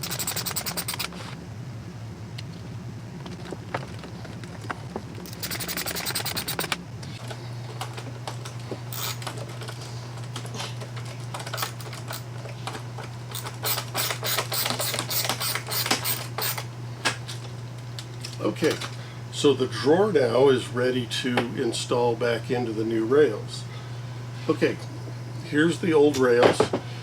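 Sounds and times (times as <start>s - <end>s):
screwdriver clicking: 0.0s - 1.2s, 5.3s - 6.8s, 9.0s - 9.3s, 13.3s - 16.6s
steady low hum: 0.0s - 27.0s.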